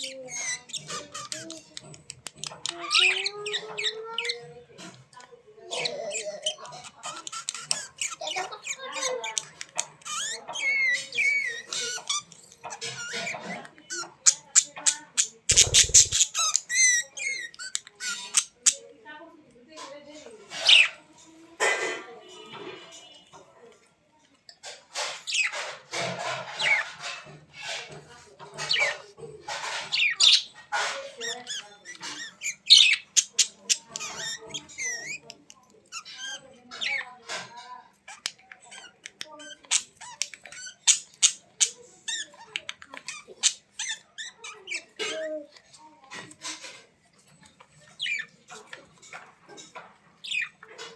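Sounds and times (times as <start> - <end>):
birds chirping and squawking: 0.0 - 18.9, 20.1 - 21.8, 24.6 - 50.9
bird squawking harshly: 15.2 - 16.9.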